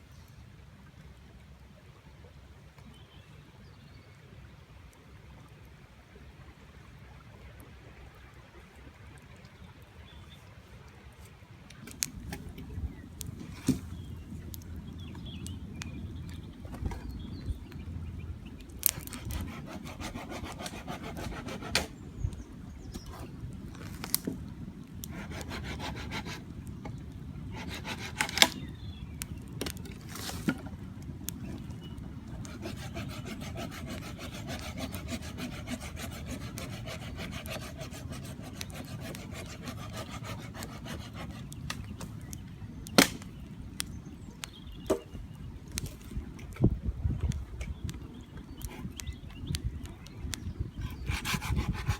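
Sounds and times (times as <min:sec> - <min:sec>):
hand saw cutting wood: 0:18.9 - 0:21.9, 0:25.0 - 0:26.4, 0:27.6 - 0:28.6, 0:32.4 - 0:41.6, 0:50.8 - 0:51.9.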